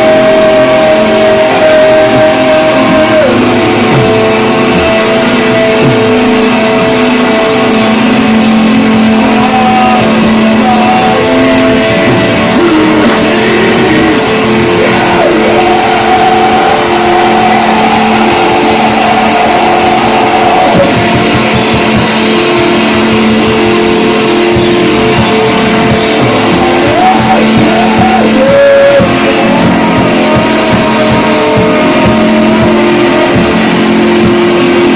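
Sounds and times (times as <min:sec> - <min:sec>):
drums: 0:00.0 - 0:34.9
electric guitars: 0:00.0 - 0:34.9.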